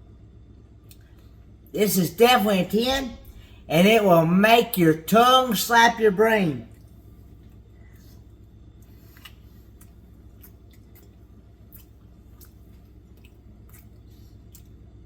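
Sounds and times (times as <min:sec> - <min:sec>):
low steady background hum: 0:00.0 - 0:15.0
wet mouth clicks: 0:00.9 - 0:01.2, 0:09.1 - 0:14.8
man chewing food: 0:06.7 - 0:15.0.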